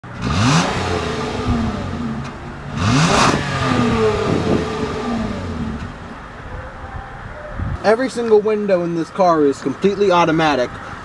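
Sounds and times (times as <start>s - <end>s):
car engine revving: 0.0s - 6.3s.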